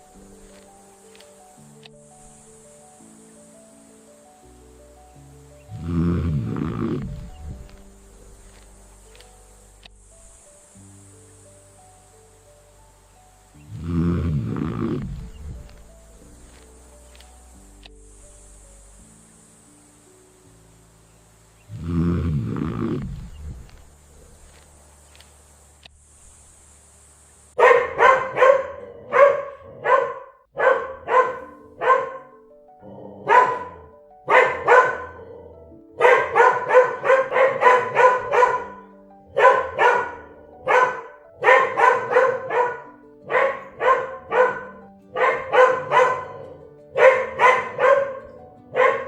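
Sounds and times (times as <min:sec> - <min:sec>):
dog barking: 0:27.6 - 0:49.0.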